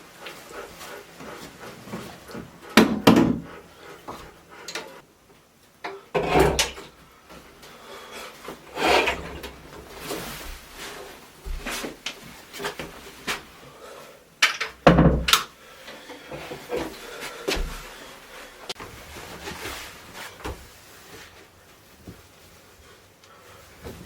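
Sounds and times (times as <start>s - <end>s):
wooden knocking and scraping: 1.8s - 4.3s.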